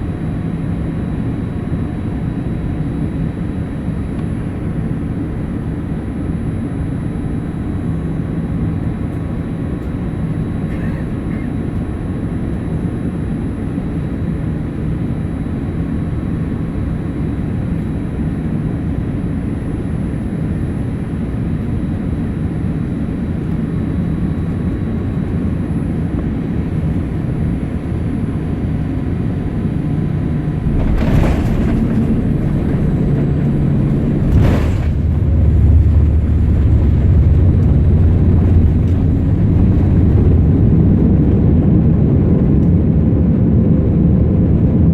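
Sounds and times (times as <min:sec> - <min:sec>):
aircraft cabin engine hum: 0:00.0 - 0:44.9
wheels rumbling on runway: 0:23.4 - 0:44.9.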